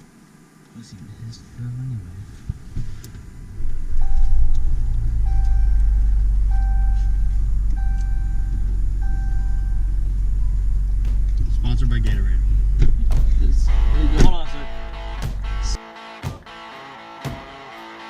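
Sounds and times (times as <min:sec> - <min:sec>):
low rumble: 0:02.0 - 0:15.8
short electronic beeps: 0:04.0 - 0:04.6, 0:05.2 - 0:10.6.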